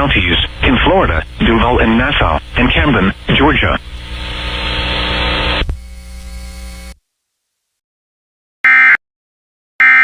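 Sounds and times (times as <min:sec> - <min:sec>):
harsh buzzing data bursts: 0:00.0 - 0:07.0
hissing radio static: 0:00.0 - 0:07.0
low hum: 0:00.0 - 0:07.0.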